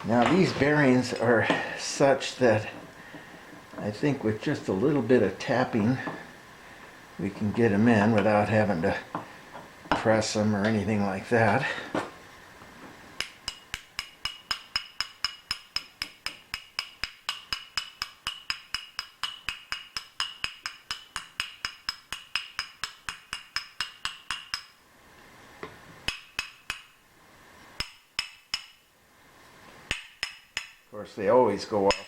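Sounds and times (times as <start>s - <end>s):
hammer tapping metal: 13.2s - 24.8s, 26.1s - 27.0s, 27.8s - 28.9s, 29.9s - 30.9s.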